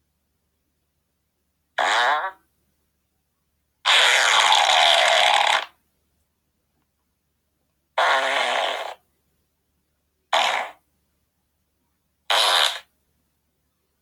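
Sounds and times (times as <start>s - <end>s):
fart sounds: 1.8s - 2.4s, 3.9s - 5.8s, 8.0s - 9.0s, 10.3s - 10.8s, 12.3s - 12.9s.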